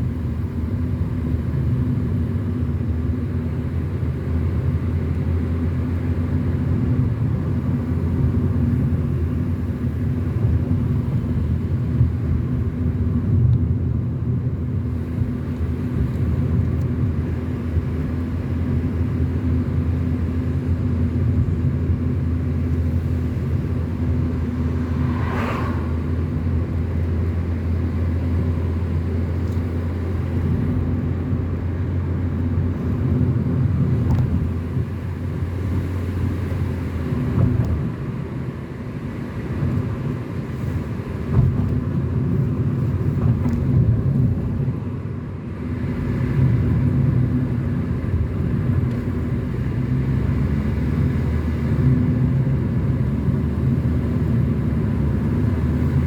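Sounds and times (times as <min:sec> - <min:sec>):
car engine and tyre drone: 0:00.0 - 0:56.0.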